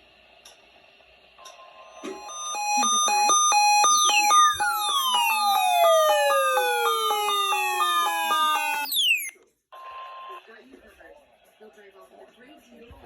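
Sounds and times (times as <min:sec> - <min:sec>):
electronic jingle beeping: 0:02.0 - 0:09.3
falling whistle: 0:02.0 - 0:09.3.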